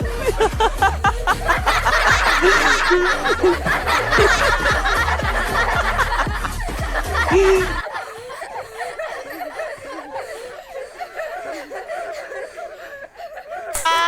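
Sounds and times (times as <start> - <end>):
music: 0.0 - 7.8
person giggling in high voice: 0.0 - 14.0.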